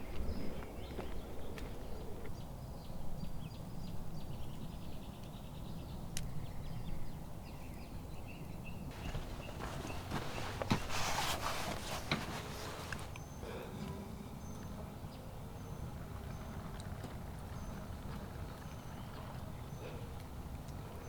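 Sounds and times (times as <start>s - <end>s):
small birds chirping: 0.0s - 13.8s
soft knocks: 8.9s - 13.2s.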